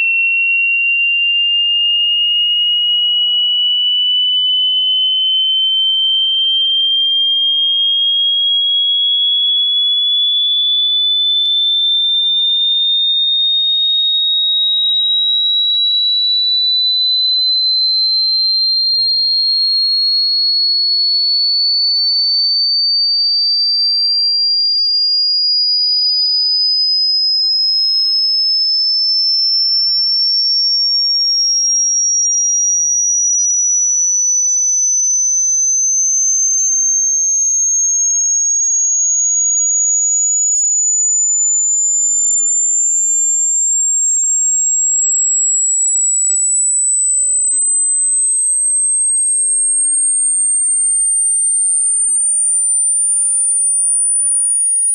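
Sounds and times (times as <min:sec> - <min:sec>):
rising pure sine tone: 0:02.5 - 0:08.8, 0:27.3 - 0:54.9.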